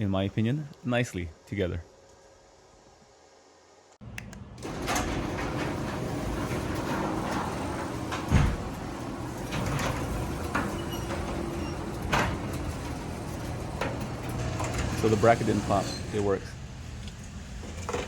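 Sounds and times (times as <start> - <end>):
garage door rumbling on track: 4.5 - 18.0
garage door clunks: 4.6 - 16.3.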